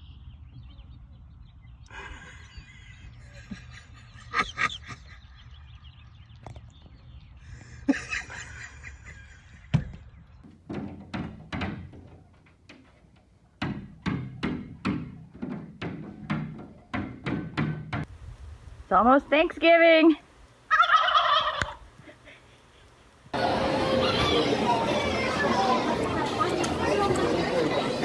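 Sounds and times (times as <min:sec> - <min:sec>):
dull thunks: 0:09.7 - 0:18.1.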